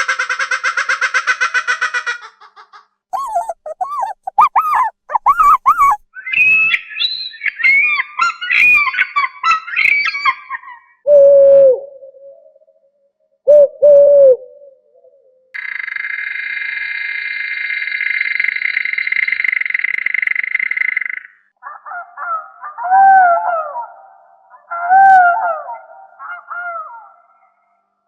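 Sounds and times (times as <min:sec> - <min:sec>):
low bird hoots: 0:03.2 - 0:06.8
rapid bird trill: 0:03.2 - 0:10.3.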